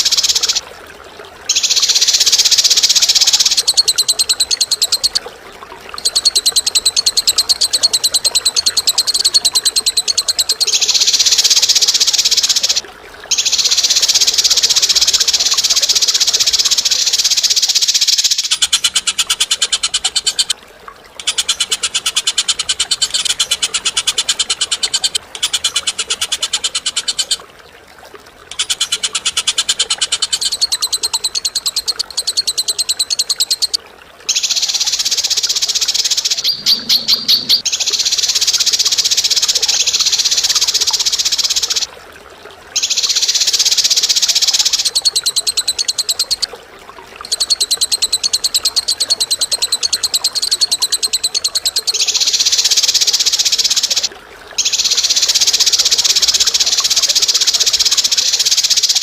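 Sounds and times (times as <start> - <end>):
bird rattling calls: 0.0 - 0.6, 1.5 - 5.2, 6.0 - 20.5, 28.5 - 41.9, 47.2 - 59.0.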